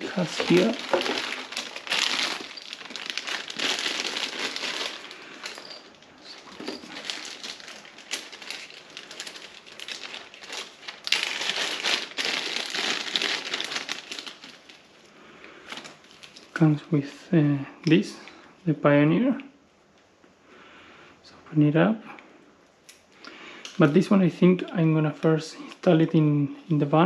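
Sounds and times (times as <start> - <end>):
packaging crinkling: 0.0 - 16.6.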